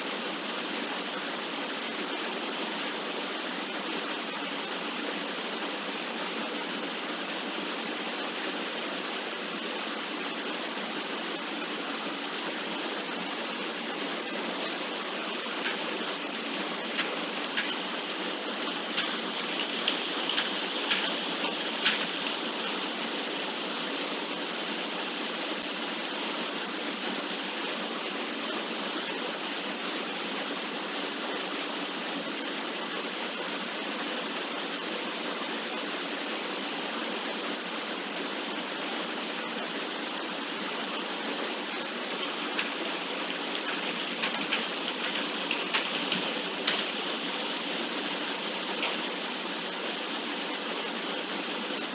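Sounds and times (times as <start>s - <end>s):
sharp clicks: 15.6s - 15.9s, 17.0s - 17.9s, 19.0s - 22.3s, 42.1s - 47.0s.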